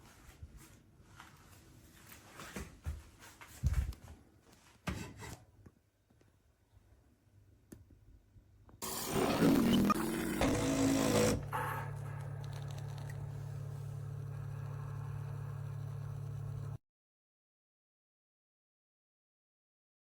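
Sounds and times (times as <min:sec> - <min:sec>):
coffee machine pump buzzing: 0:08.8 - 0:16.8.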